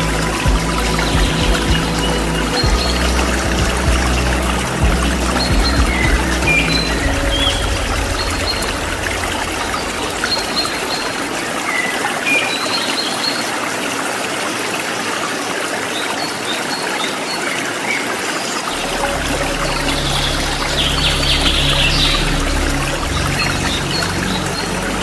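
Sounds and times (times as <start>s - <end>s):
low steady hum: 0.0s - 12.0s
running water: 0.0s - 25.0s.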